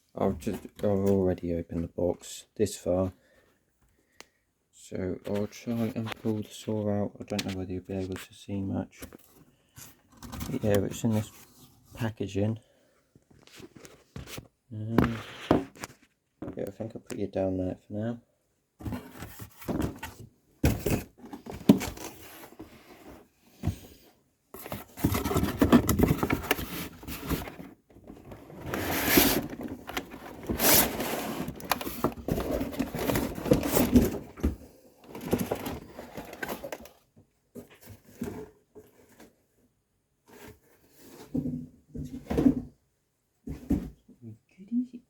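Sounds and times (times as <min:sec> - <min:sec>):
cardboard packaging scraping and rustling: 0:18.8 - 0:34.5, 0:35.1 - 0:37.0.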